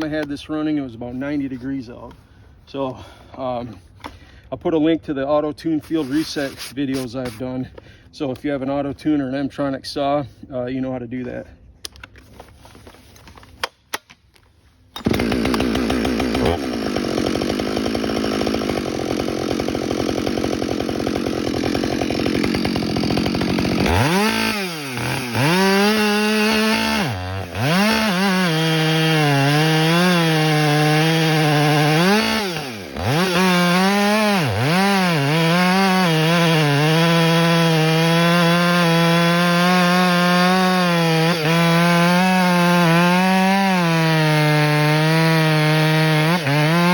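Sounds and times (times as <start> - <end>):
chainsaw revving: 15.0 - 46.9.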